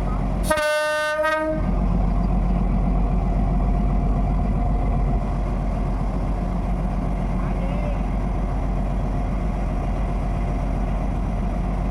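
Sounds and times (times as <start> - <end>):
train rumbling: 0.0 - 11.9
locomotive horn blast: 0.4 - 1.8.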